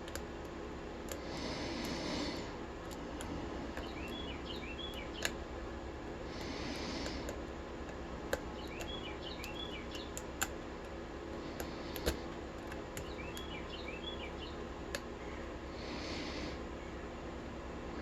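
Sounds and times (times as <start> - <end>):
low background hum: 0.0 - 18.0
faint bird chirping: 3.2 - 5.4, 8.5 - 10.4, 12.9 - 18.0.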